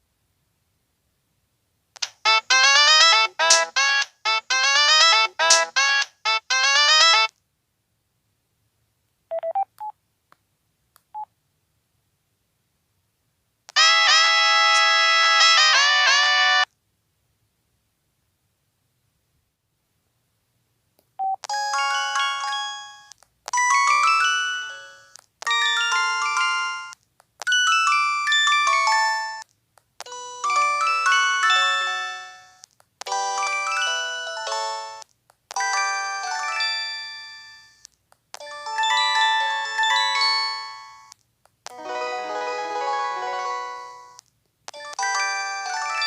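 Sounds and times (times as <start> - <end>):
mobile phone melodic jingles: 2.2 - 7.3, 21.2 - 29.4, 30.0 - 41.1, 41.8 - 46.0.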